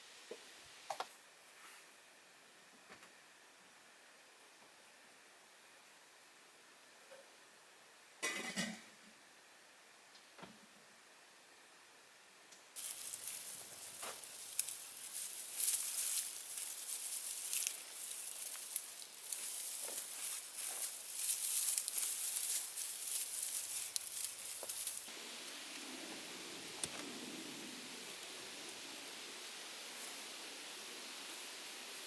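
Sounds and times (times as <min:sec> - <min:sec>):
crinkly material rustling: 0:12.8 - 0:25.1.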